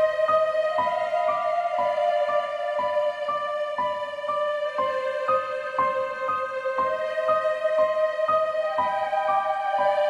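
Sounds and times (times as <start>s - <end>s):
soft keyboard melody: 0.0s - 10.0s.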